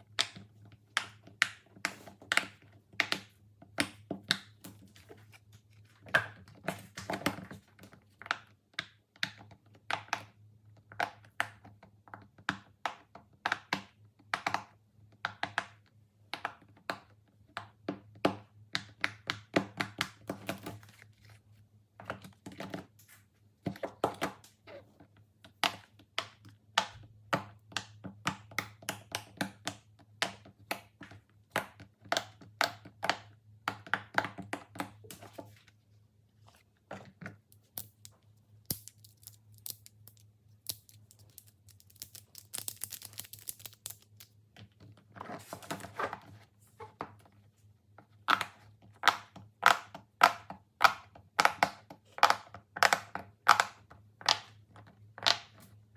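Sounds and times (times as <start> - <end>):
plastic toys clicking and tapping: 37.2 - 44.9, 48.2 - 55.7
plastic crinkling: 37.5 - 44.3.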